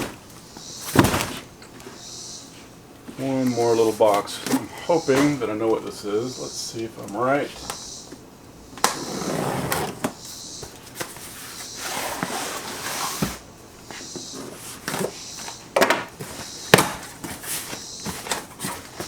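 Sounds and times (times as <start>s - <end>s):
cardboard box flaps and tape rustling: 0.0s - 1.5s.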